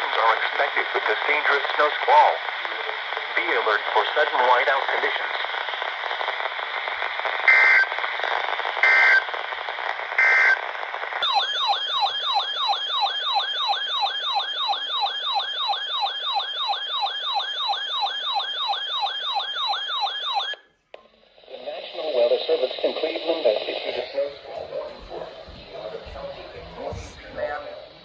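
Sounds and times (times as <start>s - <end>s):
radio hiss: 0.0s - 10.1s, 21.2s - 28.0s.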